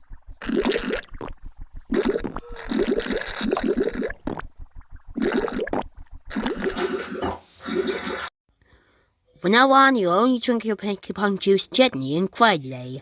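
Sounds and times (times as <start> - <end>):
cartoon gurgling slurps: 0.4 - 8.3.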